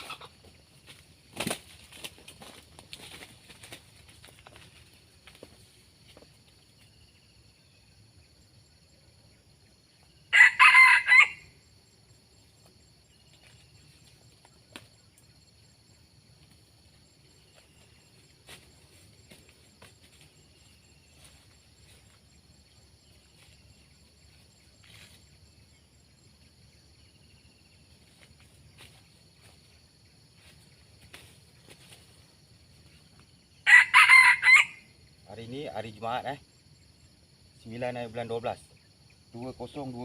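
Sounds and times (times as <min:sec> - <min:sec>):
high insect drone: 0:00.0 - 0:40.0.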